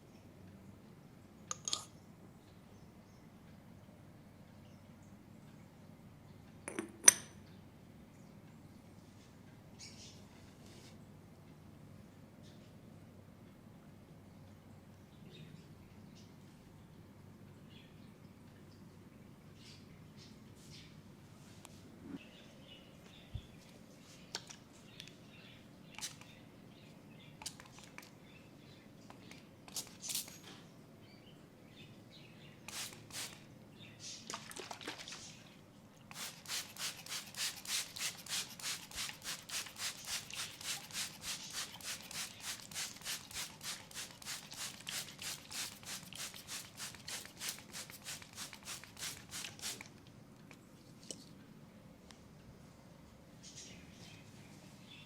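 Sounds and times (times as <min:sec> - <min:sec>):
hands rubbing oil into skin: 0:32.7 - 0:33.4, 0:36.1 - 0:49.9.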